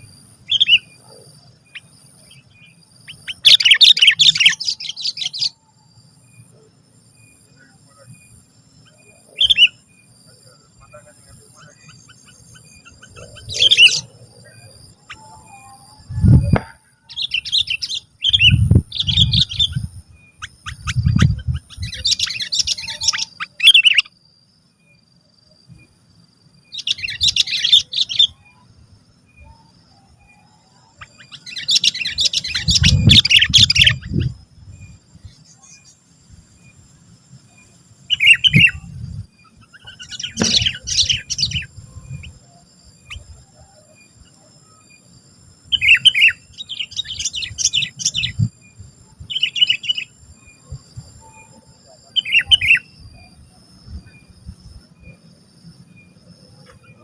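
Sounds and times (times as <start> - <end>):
bird singing chattering phrases: 0.5 - 5.6, 6.7 - 24.2, 26.7 - 28.7, 30.9 - 36.1, 38.0 - 42.4, 45.7 - 48.6, 51.2 - 53.4.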